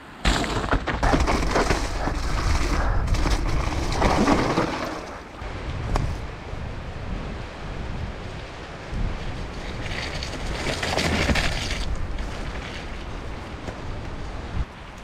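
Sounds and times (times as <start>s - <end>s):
wind buffeting microphone: 1.0s - 14.8s.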